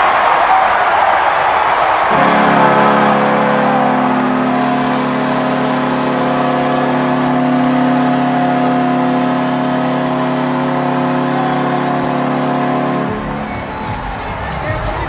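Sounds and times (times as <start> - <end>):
goal horn blast: 1.2 - 15.0.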